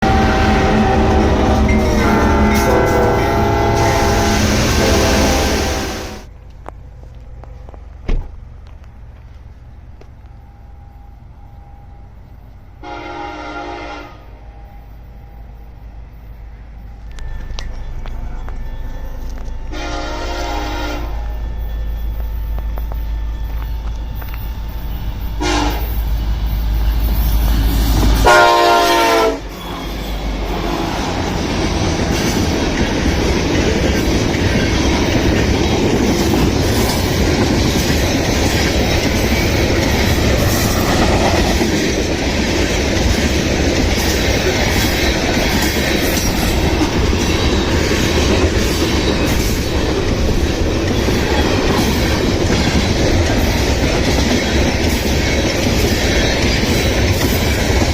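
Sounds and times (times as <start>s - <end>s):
train air horn blast: 0.0s - 6.3s, 12.8s - 14.3s, 19.7s - 21.3s, 25.4s - 26.1s, 28.1s - 31.3s
train wheels and rail clatter: 0.0s - 13.3s, 14.3s - 57.9s
diesel locomotives rumbling: 0.0s - 57.9s.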